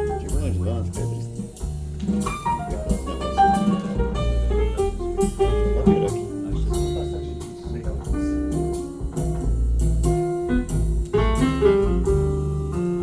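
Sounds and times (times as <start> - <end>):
drum kit: 0.0 - 13.0
moving bass line: 0.0 - 13.0
piano: 0.0 - 13.0.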